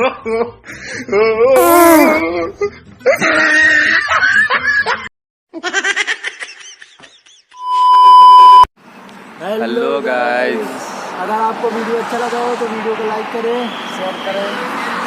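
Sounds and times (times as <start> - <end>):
laughter: 0.0 - 1.1, 3.0 - 7.6
loud steady beep: 7.6 - 8.7.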